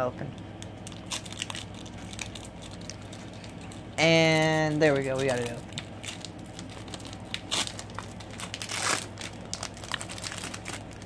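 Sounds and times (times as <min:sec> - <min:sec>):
foil wrapper crinkling: 0:00.6 - 0:11.0.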